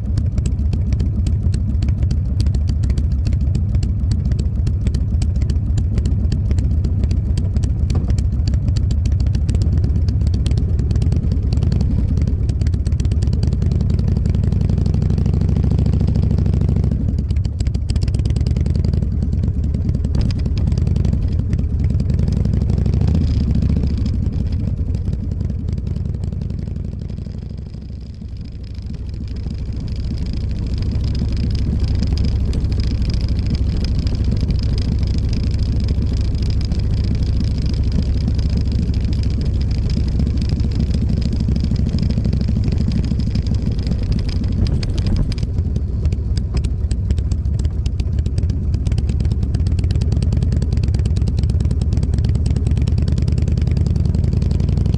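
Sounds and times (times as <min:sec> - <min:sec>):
motorcycle engine drone: 0:00.0 - 0:54.9.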